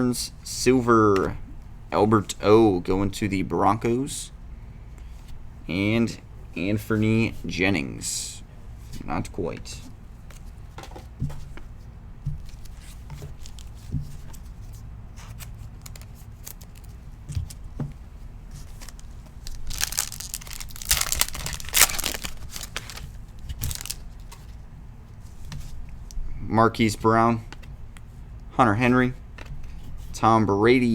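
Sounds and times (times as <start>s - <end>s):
cards tapping and rustling: 10.2s - 18.0s, 18.6s - 24.5s
wrapper tearing and crinkling: 13.4s - 13.8s, 15.8s - 17.0s, 18.7s - 24.4s.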